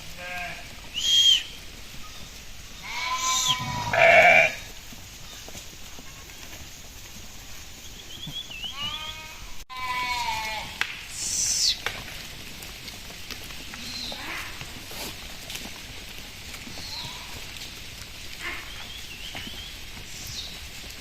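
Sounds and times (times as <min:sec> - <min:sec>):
sheep bleating: 0:00.2 - 0:00.7, 0:02.8 - 0:04.7, 0:08.7 - 0:10.8.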